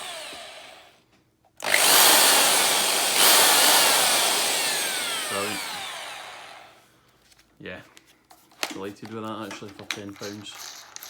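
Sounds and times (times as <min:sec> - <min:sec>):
drill motor running and spinning down: 0:00.0 - 0:01.0, 0:01.6 - 0:06.8.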